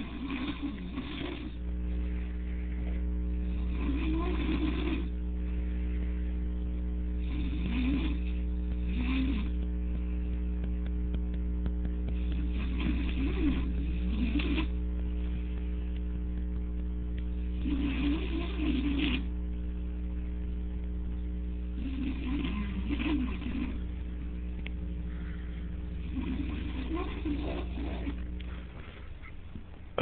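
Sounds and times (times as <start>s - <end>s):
man snoring: 0.0s - 1.8s, 3.2s - 5.4s, 7.1s - 9.7s, 12.0s - 14.8s, 17.4s - 19.4s, 21.7s - 28.4s
electrical hum: 0.0s - 30.0s.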